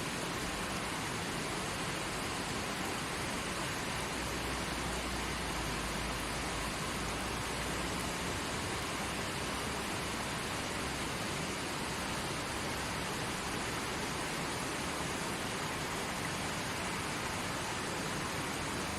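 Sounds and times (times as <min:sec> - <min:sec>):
river rushing over rocks: 0:00.0 - 0:18.9.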